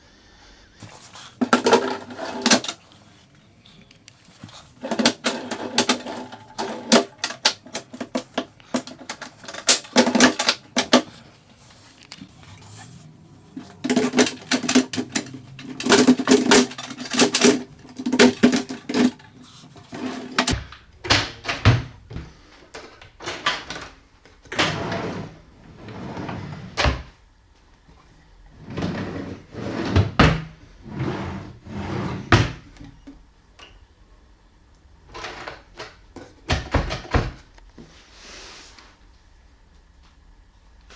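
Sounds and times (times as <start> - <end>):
cabinet doors knocking shut: 20.5 - 22.3, 36.5 - 37.4.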